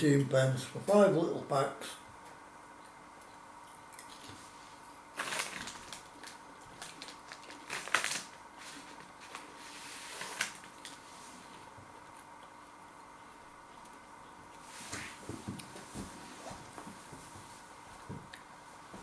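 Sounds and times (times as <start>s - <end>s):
crunchy snack being chewed: 3.2s - 4.4s, 5.2s - 9.5s.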